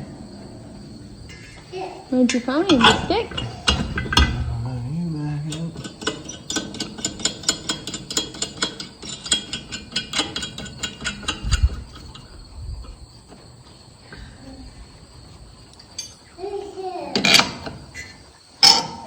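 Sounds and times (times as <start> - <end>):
ratchet wrench clicking: 5.5 - 12.3.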